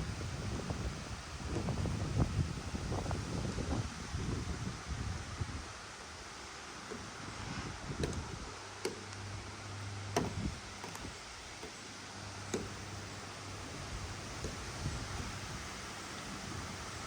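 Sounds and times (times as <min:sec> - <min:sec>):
gusty wind: 0:00.0 - 0:17.0
sharp knocks and clicks: 0:08.0 - 0:09.0, 0:10.1 - 0:11.8, 0:12.5 - 0:12.9.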